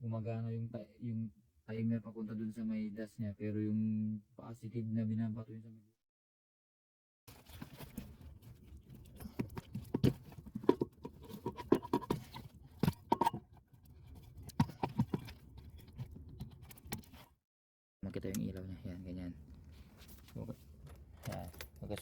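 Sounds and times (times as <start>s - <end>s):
hands working with tools: 7.3s - 17.4s.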